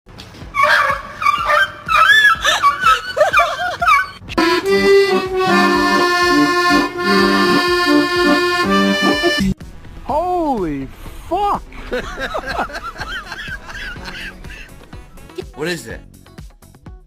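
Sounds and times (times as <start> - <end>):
accordion music: 3.9 - 9.6.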